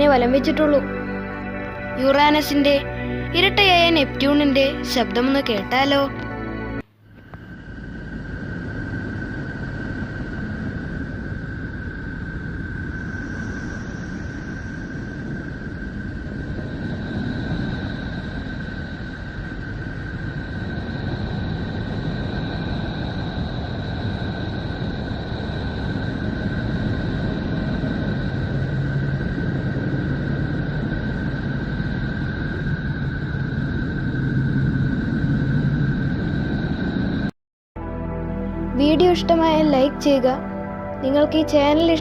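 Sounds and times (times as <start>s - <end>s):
low steady hum: 0.0s - 42.0s
rumbling drone: 0.0s - 42.0s
thin high tones: 37.8s - 42.0s.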